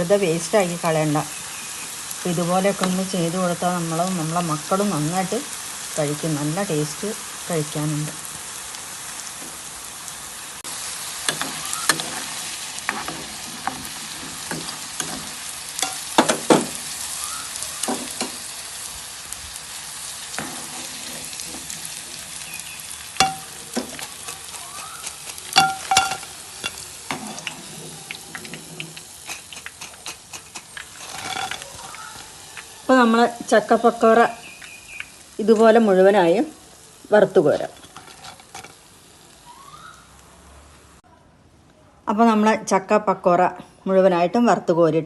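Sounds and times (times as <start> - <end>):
food deep-frying in hot oil: 0.0 - 41.1
utensil clinking against pan: 25.2 - 26.8.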